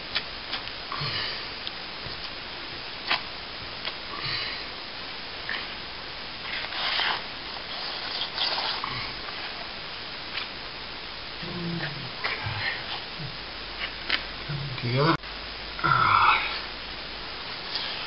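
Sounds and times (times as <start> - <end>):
sandpaper scratching plaster: 6.5 - 8.8.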